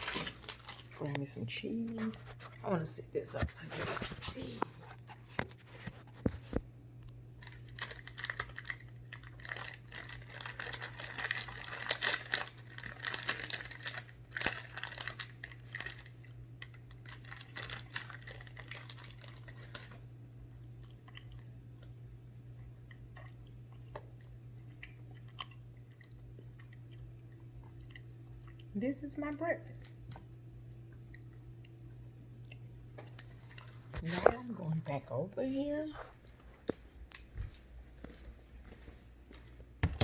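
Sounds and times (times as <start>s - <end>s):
plastic packaging crinkling: 0.0s - 2.7s, 7.4s - 20.0s.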